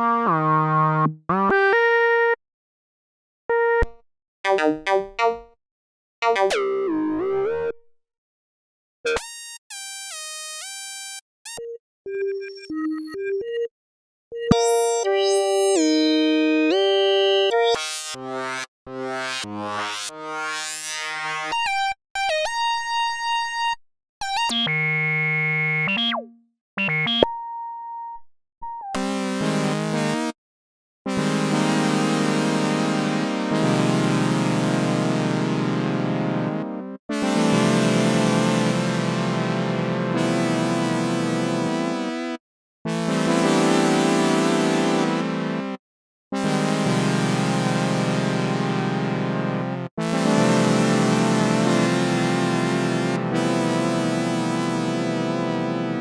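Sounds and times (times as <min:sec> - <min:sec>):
synthesizer plucked notes: 0:04.5 - 0:05.6, 0:06.2 - 0:07.8, 0:14.3 - 0:21.7, 0:24.3 - 0:30.2, 0:46.4 - 0:56.0
short bleeping synth notes: 0:14.5 - 0:16.1
synthesizer chord: 0:14.5 - 0:21.5, 0:31.2 - 0:42.1, 0:46.4 - 0:56.0.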